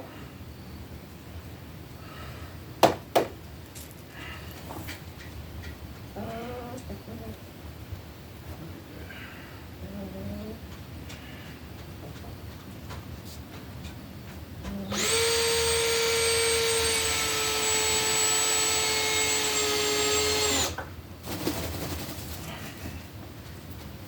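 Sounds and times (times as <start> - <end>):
power drill whining: 14.9 - 20.8.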